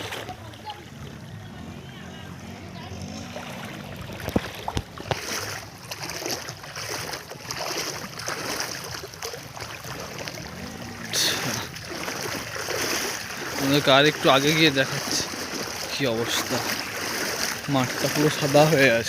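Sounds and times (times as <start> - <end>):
water splashing and sloshing: 0.0 - 19.0.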